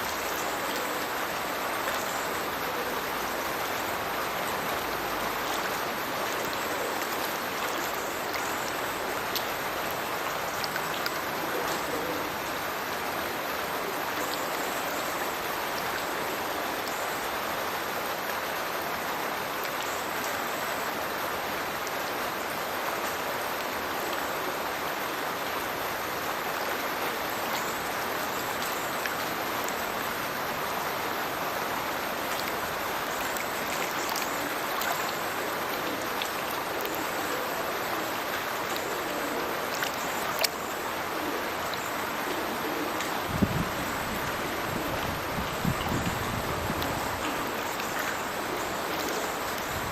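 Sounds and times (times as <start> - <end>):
water splashing from outfall: 0.0 - 49.9.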